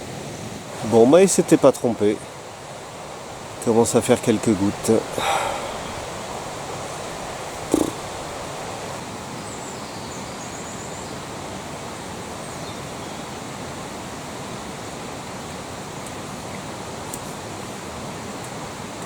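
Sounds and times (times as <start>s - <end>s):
stream rushing: 0.0s - 9.5s.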